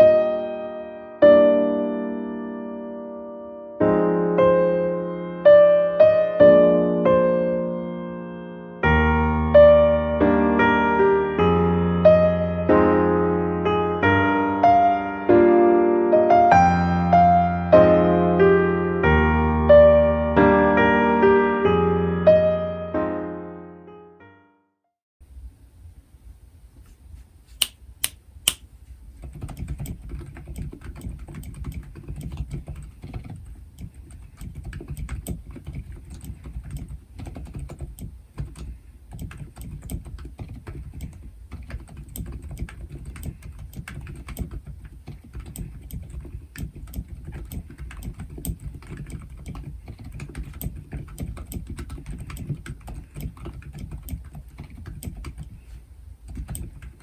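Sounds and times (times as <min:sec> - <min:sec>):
sharp clicks: 0:27.6 - 0:28.6
typing on mechanical keyboard: 0:29.3 - 0:55.6, 0:56.2 - 0:57.0.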